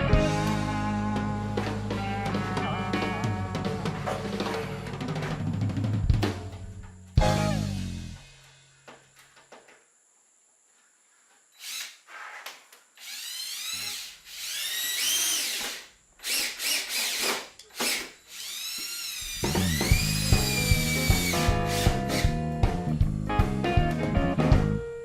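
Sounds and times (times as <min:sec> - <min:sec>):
background music with drum beat: 0:00.0 - 0:08.5, 0:19.5 - 0:24.9
power drill driving screws: 0:11.6 - 0:22.3.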